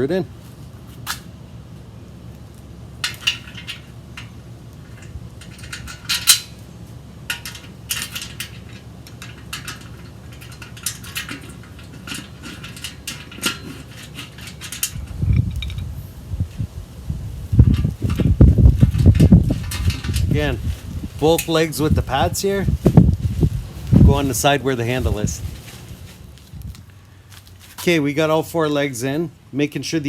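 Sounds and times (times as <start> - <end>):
metal bolts clinking: 3.0 - 15.9, 17.7 - 20.6.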